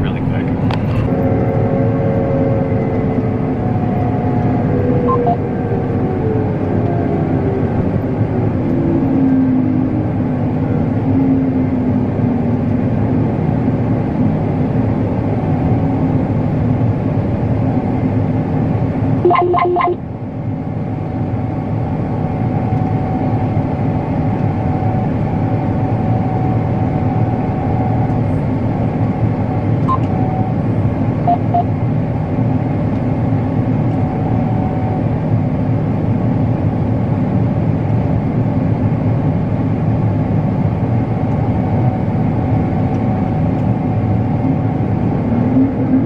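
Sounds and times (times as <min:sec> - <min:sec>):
combine harvester engine: 0:00.0 - 0:46.0
quick electronic beeps: 0:19.2 - 0:20.0, 0:31.3 - 0:31.7.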